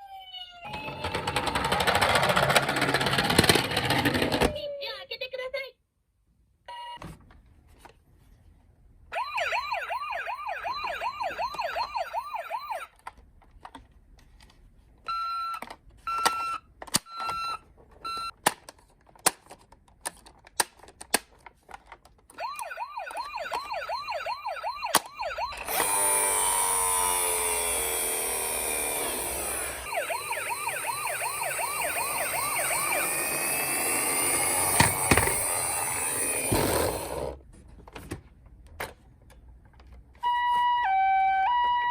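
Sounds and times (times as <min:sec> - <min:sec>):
electronic toy siren wailing: 0:00.0 - 0:01.3, 0:09.1 - 0:12.9, 0:22.4 - 0:37.2, 0:40.2 - 0:41.9.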